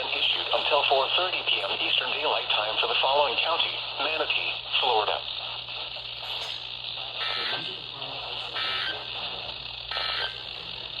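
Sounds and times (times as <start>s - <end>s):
receiver hiss: 0.0s - 11.0s
digital data bursts: 6.4s - 11.0s.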